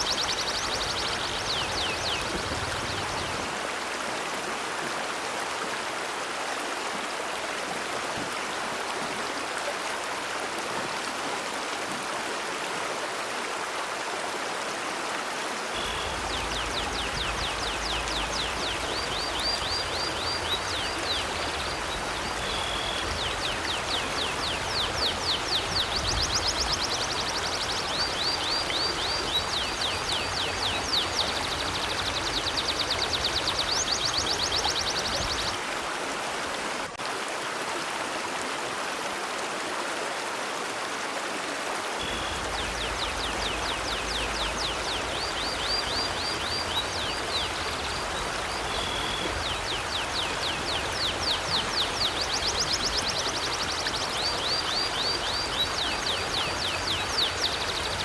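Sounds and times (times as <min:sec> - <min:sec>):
river water flowing: 0:00.0 - 0:58.0.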